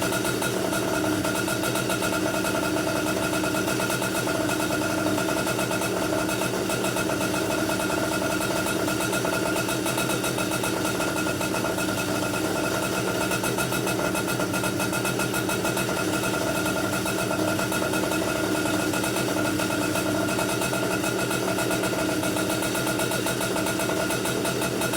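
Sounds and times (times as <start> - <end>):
two-stroke kart engine running: 0.0 - 24.9.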